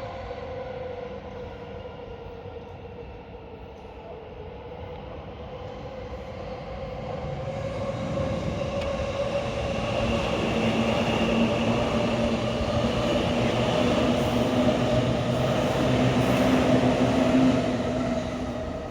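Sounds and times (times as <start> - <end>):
train whine: 0.0 - 18.9
electric train approaching: 6.8 - 18.9.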